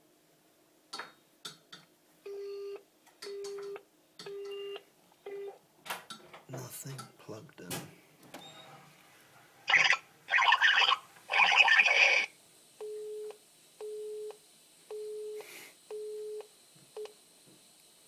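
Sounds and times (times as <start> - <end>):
telephone busy tone: 2.3 - 5.6, 9.7 - 17.1.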